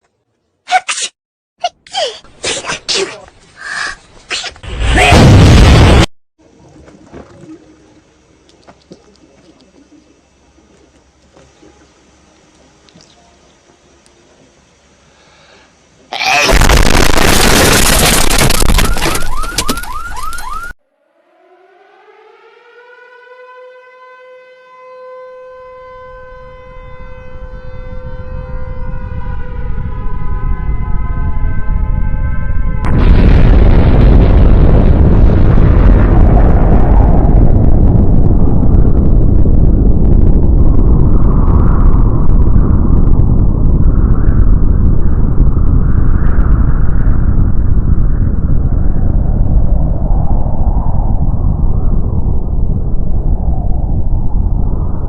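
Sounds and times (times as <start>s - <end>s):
short sneezes: 0.7s - 1.2s, 1.9s - 3.2s
loud distorted blast: 4.7s - 6.1s, 16.3s - 19.4s, 32.8s - 54.9s
siren-like wail: 18.4s - 34.2s
low rumble: 26.7s - 55.0s.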